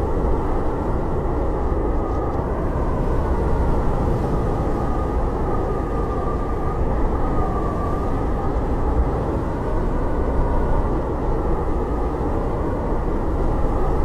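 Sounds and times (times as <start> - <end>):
howling blizzard wind: 0.0 - 14.0.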